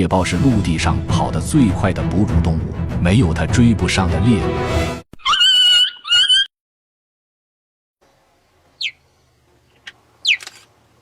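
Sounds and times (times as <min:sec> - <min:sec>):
cheetah chirping: 0:05.2 - 0:06.5, 0:08.8 - 0:09.1, 0:09.7 - 0:10.6
high squeaks sweeping downward: 0:05.2 - 0:06.5.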